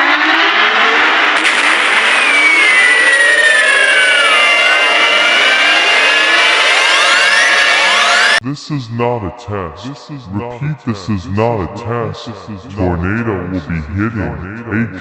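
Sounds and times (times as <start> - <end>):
emergency alert alarm blare: 1.4 - 8.4.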